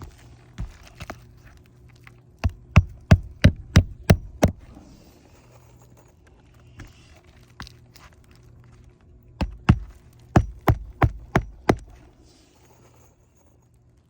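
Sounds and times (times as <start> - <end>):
hammer driving a nail: 2.4 - 4.6, 9.4 - 12.1.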